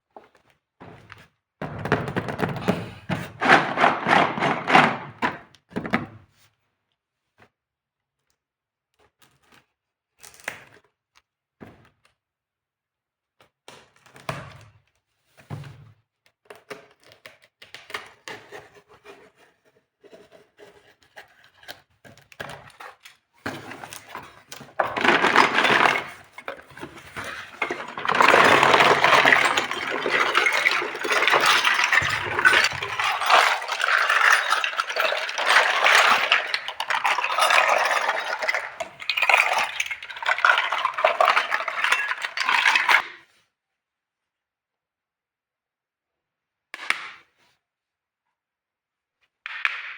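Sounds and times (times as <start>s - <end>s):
packaging crinkling and rattling: 2.1s - 5.4s, 22.9s - 43.0s.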